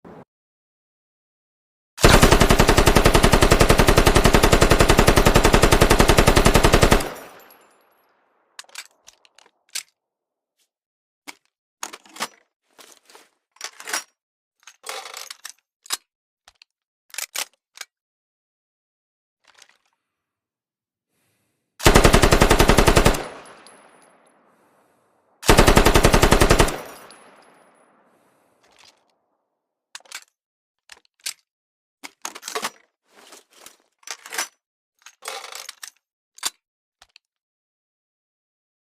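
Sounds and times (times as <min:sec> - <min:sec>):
machine gun automatic burst: 0:02.0 - 0:07.5, 0:21.8 - 0:23.7, 0:25.4 - 0:27.5.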